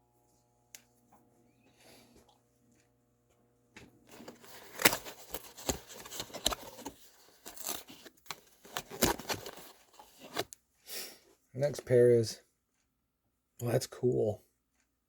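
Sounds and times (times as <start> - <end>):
packaging crinkling and rustling: 4.1 - 10.6.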